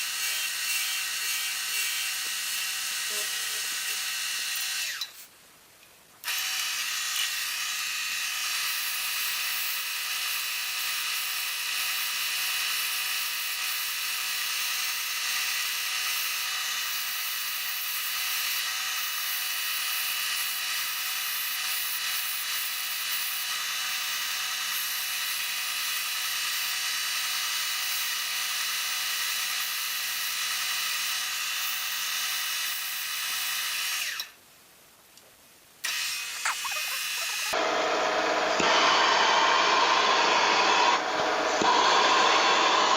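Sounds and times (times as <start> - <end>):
wood lathe motor whine: 0.0 - 5.1, 35.9 - 42.9.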